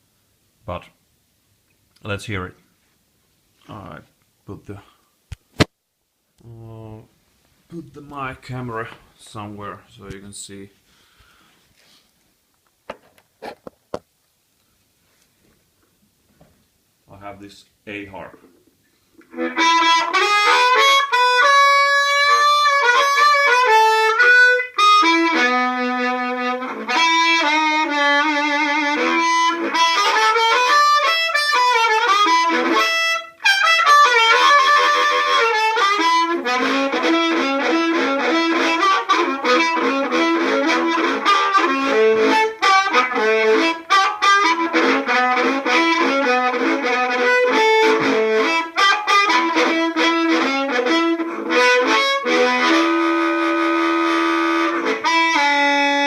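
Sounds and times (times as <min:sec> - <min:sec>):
amplified harmonica: 0:19.2 - 0:56.0.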